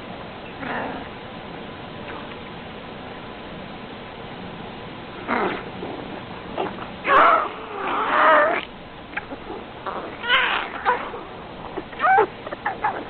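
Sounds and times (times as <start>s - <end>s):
cat-like meowing and yowling: 7.1s - 11.2s, 11.8s - 13.0s.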